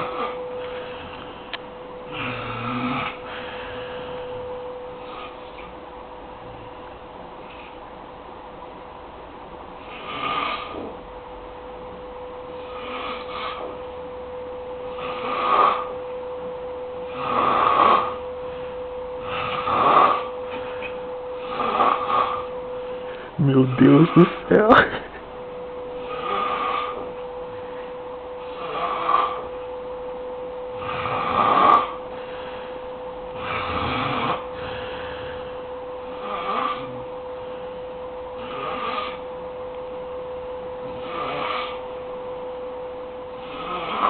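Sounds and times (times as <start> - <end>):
loud snoring: 0.0 - 1.2, 2.0 - 4.2, 5.0 - 5.6, 9.8 - 11.0, 12.5 - 13.8, 14.9 - 16.0, 17.1 - 18.3, 19.2 - 20.4, 21.4 - 22.5, 26.0 - 27.1, 28.4 - 29.5, 30.7 - 32.0, 33.3 - 37.2, 38.4 - 39.3, 40.8 - 42.0, 43.3 - 44.0
steady hum: 0.0 - 44.0.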